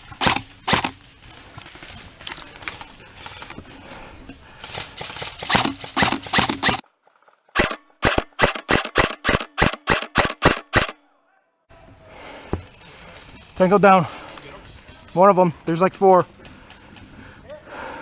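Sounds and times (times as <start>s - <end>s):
running footsteps on hard ground: 12.2s - 18.0s.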